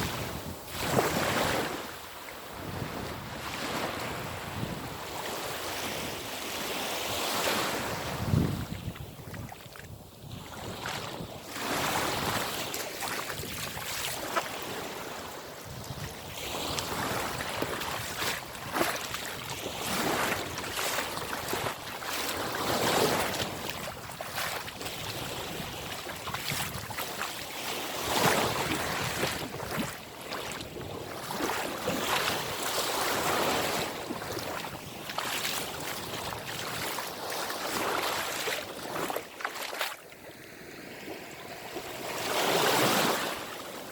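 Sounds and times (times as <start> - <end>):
sea waves washing in: 0.0 - 43.9
wind buffeting microphone: 7.8 - 12.6, 15.6 - 27.2, 27.9 - 37.0.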